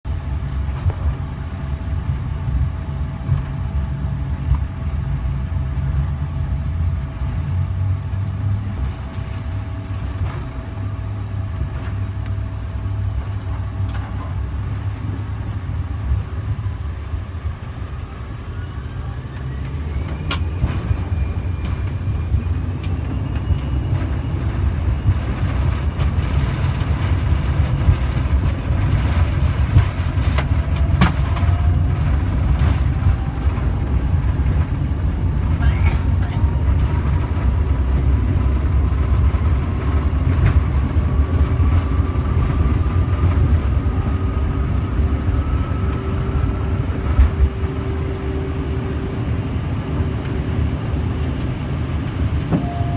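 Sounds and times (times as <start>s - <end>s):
jet engine cabin rumble: 0.0s - 52.9s
rising whine: 15.2s - 52.9s.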